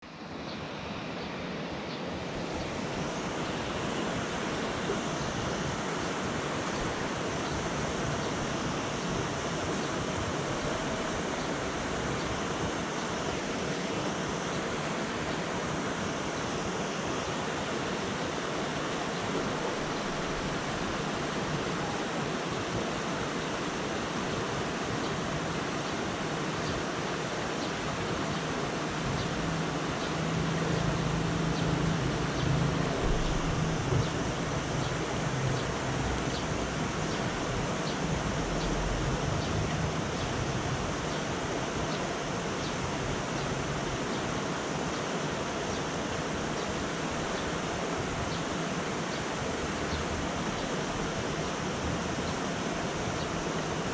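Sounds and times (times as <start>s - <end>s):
steady rain hiss: 0.0s - 53.9s
low hum: 29.1s - 40.8s.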